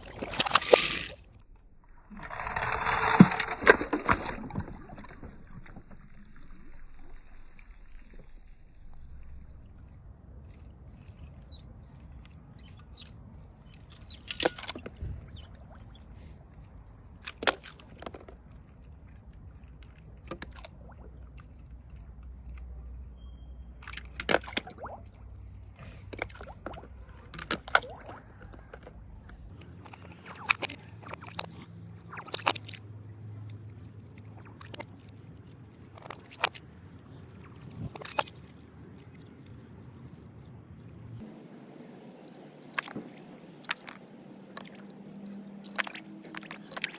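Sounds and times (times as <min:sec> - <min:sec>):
toy cars clattering and knocking: 0:00.0 - 0:01.3.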